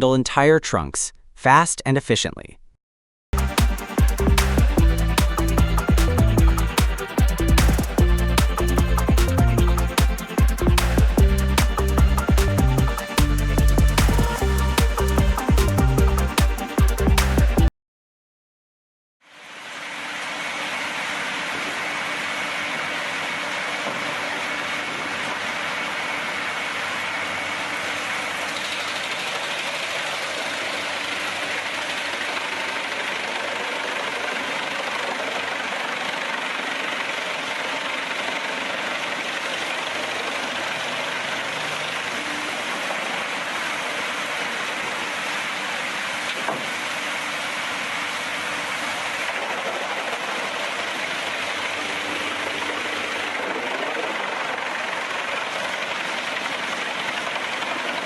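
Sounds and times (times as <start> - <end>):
wood chipper running: 19.5 - 58.0.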